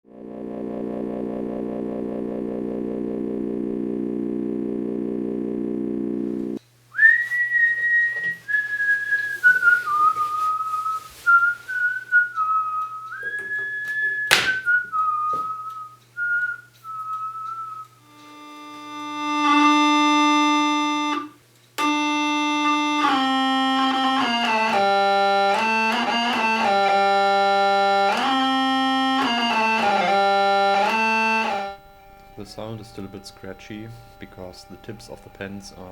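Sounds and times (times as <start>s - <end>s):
buzzy analogue synthesizer: 0.0s - 6.6s, 18.0s - 35.9s.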